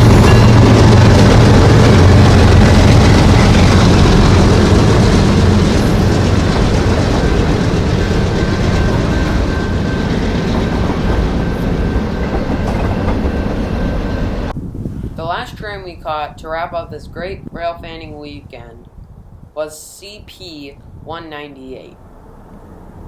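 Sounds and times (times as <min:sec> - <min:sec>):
train wheels on rails: 0:00.0 - 0:14.6
diesel locomotive hum: 0:00.0 - 0:16.6, 0:18.6 - 0:23.0.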